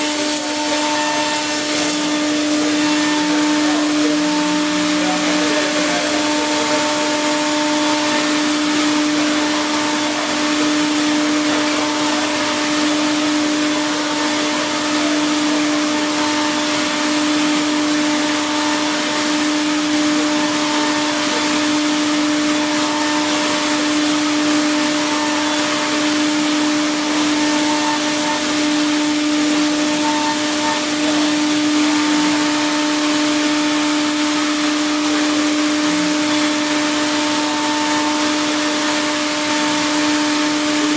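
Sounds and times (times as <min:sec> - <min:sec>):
milling machine cutting metal: 0:00.0 - 0:40.9.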